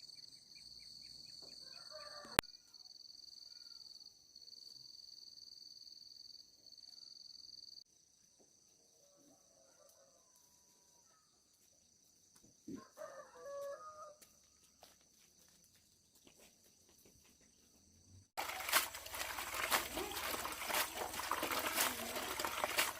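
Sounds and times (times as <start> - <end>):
rooster crowing: 1.5 - 2.9, 12.7 - 14.4.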